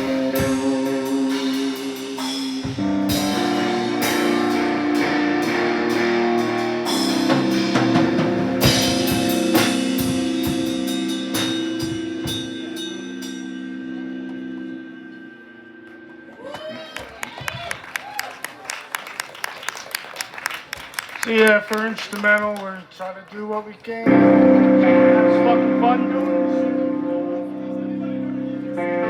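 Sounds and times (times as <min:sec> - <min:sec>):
drum kit with cymbal hits: 0:00.0 - 0:15.4
guitar chords: 0:00.0 - 0:16.7, 0:24.0 - 0:29.0.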